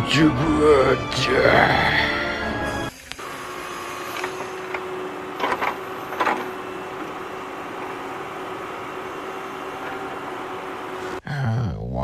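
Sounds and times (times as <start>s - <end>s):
electric gear motor whirring: 2.8s - 11.2s.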